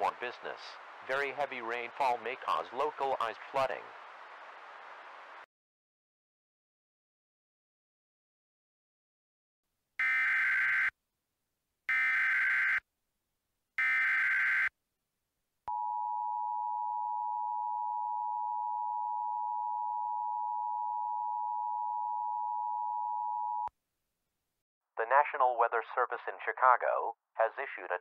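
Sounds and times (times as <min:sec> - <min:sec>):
steady attention tone: 0:15.7 - 0:23.7.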